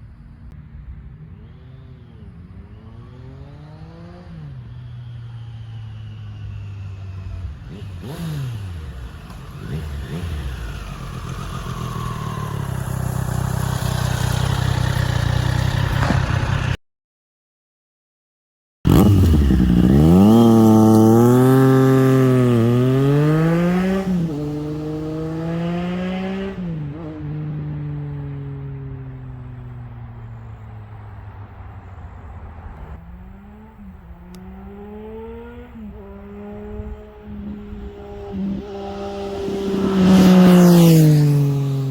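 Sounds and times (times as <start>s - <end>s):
motorcycle engine revving: 0.7s - 16.8s, 18.9s - 41.9s.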